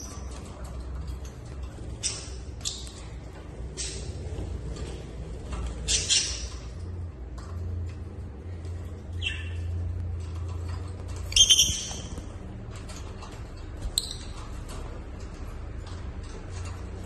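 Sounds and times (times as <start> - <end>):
parrots calling: 5.5 - 6.8, 9.1 - 9.8, 11.2 - 12.4.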